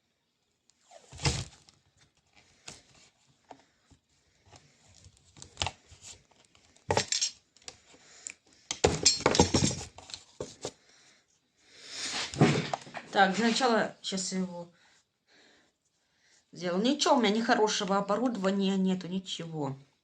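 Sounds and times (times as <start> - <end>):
parts clattering: 6.8 - 7.4, 8.7 - 10.7.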